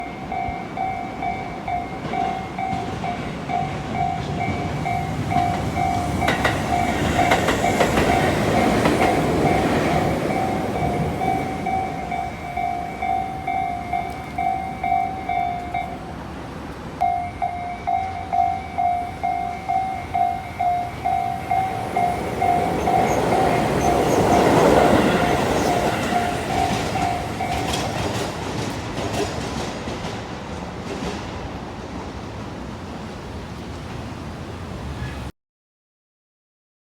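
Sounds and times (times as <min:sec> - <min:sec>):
level crossing warning bell: 0:00.0 - 0:16.4, 0:17.0 - 0:28.3
train wheels rushing on rails: 0:00.0 - 0:35.3.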